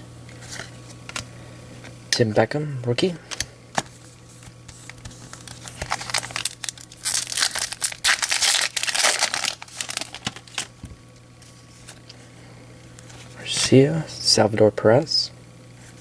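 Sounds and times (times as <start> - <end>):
card pack wrapper tearing and crinkling: 4.7 - 10.9.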